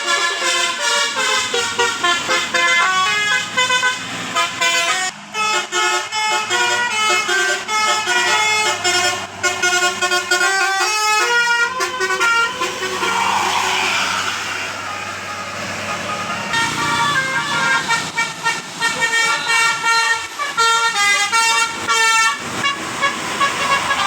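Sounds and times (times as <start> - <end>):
musical air horn playing a tune: 0.0 - 14.6.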